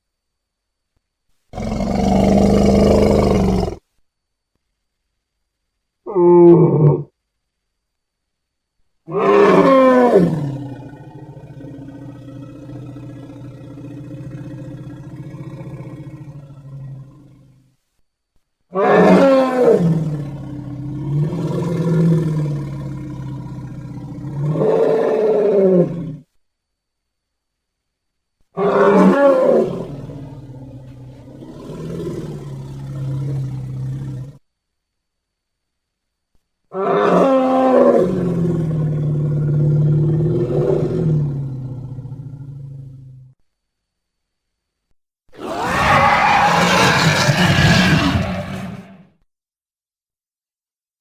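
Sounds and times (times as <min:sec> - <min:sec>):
giant monster roar: 0:45.4 - 0:49.1.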